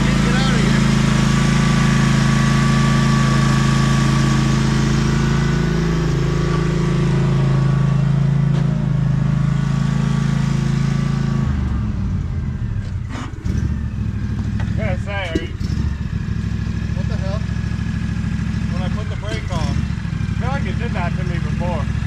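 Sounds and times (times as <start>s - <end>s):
lawn mower engine running: 0.0s - 22.0s.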